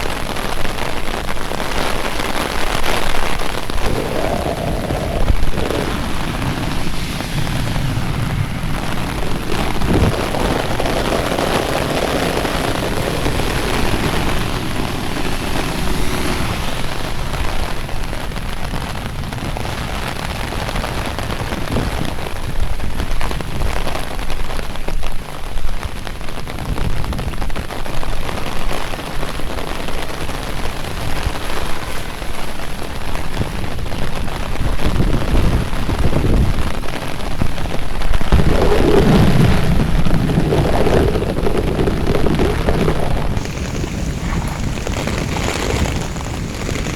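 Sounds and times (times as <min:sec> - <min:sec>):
rain spattering on surfaces: 0:00.0 - 0:46.9
deep rumble: 0:03.2 - 0:18.9, 0:37.7 - 0:46.9.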